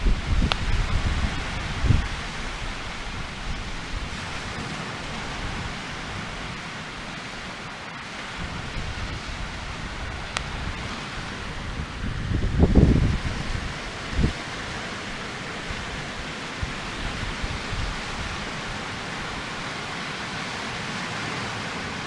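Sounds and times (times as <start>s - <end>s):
wind buffeting microphone: 0.0s - 7.5s, 8.1s - 20.0s
steady hiss: 0.0s - 22.0s
sharp crackle-like click: 0.4s - 0.7s.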